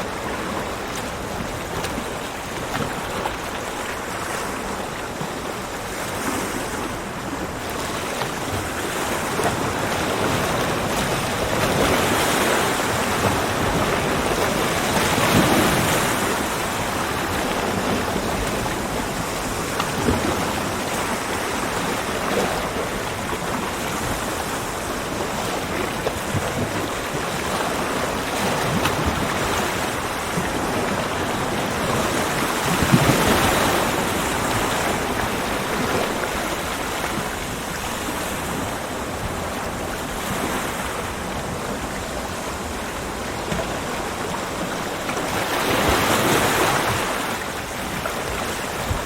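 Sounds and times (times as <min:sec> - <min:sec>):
ocean surf washing onto beach: 0:00.0 - 0:49.0.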